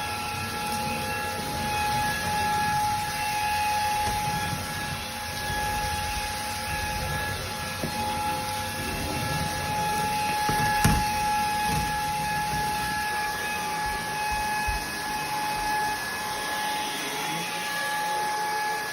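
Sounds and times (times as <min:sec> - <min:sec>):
stick vacuum running: 0:00.0 - 0:18.9
knock: 0:10.5 - 0:11.2.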